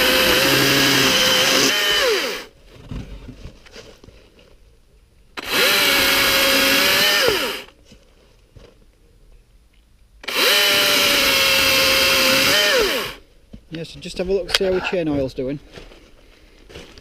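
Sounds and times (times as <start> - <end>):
battery chainsaw cutting wood: 0.0 - 2.5, 5.4 - 7.7, 10.2 - 13.2.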